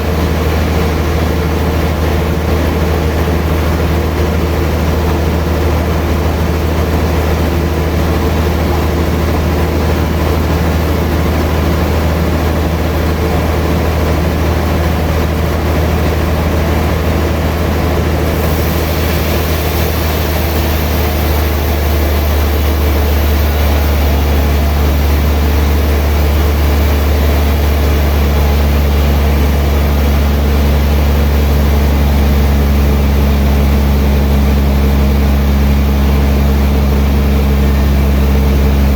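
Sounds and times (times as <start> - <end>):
sawmill machinery humming: 0.0 - 38.9
high hiss: 18.2 - 27.8.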